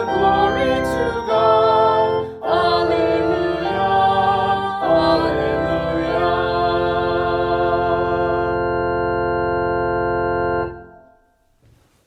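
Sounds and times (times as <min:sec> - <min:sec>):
people singing a hymn: 0:00.0 - 0:09.0
organ playing: 0:00.0 - 0:11.4.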